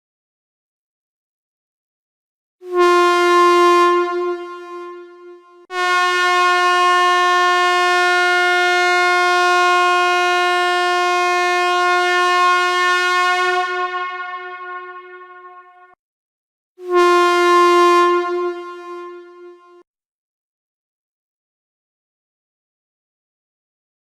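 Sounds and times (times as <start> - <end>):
train air horn blasts: 2.6 - 16.0, 16.8 - 19.8.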